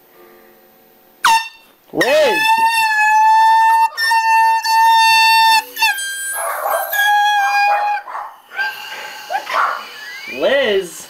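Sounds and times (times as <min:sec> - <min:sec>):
air horn blaring: 0:01.2 - 0:07.5.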